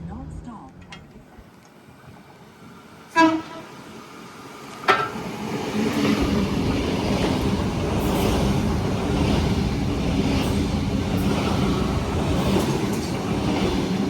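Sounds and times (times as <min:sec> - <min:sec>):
train wheels and motors rumbling: 0:00.0 - 0:14.0
train horn blasts: 0:03.1 - 0:03.8.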